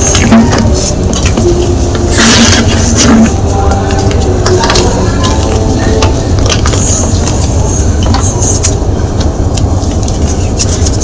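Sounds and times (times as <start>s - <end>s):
steady low rumble: 0.0s - 11.0s
chalk crunching and crackling: 9.6s - 11.0s.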